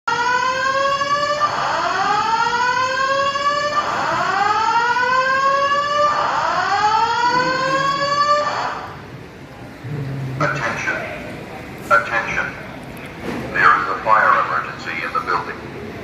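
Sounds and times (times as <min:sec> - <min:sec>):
fire alarm whoop tone: 0:00.1 - 0:08.9.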